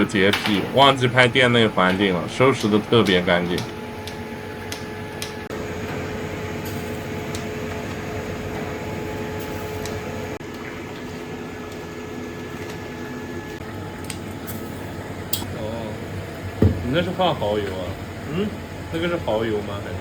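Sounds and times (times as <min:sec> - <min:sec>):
low machine hum: 0:00.0 - 0:20.0.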